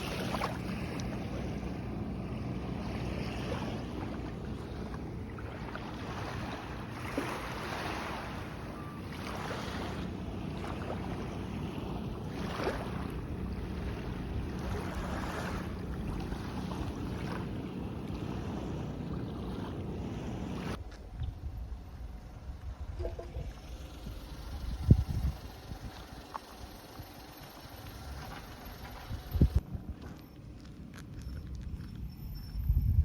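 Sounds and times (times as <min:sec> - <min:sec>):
small waves washing onto beach: 0:00.0 - 0:20.8
wind on microphone: 0:03.0 - 0:26.1, 0:29.0 - 0:30.0, 0:31.6 - 0:33.0.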